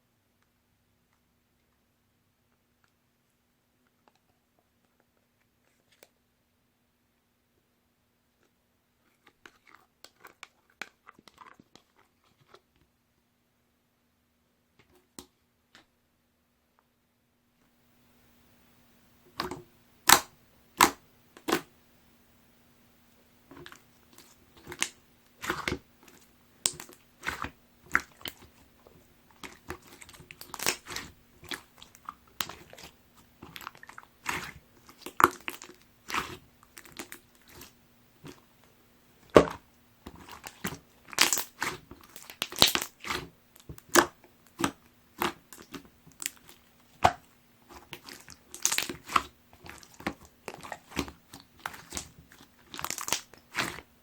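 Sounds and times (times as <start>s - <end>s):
slime crunching and crackling: 19.4s - 21.7s, 23.5s - 54.0s.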